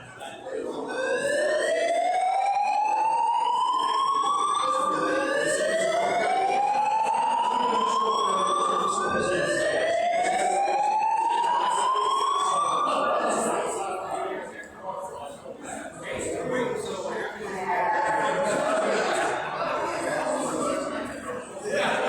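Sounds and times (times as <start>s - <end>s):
fire alarm whoop tone: 0.6s - 14.3s.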